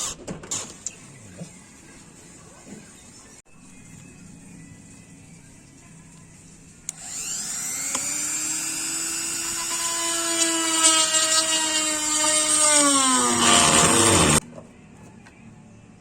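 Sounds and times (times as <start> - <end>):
electric motor whining: 6.9 - 14.4.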